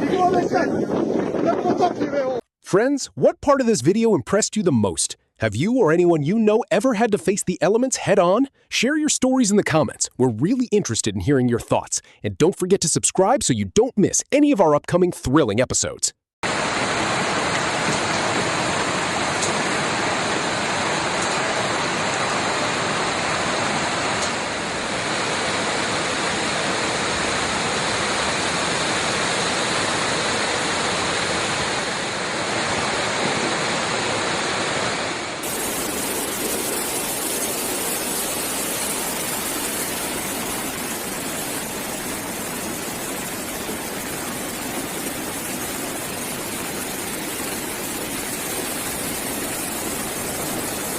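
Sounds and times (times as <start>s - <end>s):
floodwater rushing: 16.4s - 50.9s.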